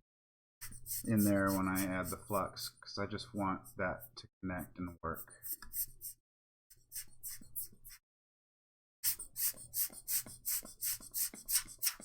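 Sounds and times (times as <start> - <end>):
rubbing strokes on circuit board: 0.6 - 4.2, 5.2 - 8.0, 9.0 - 12.0.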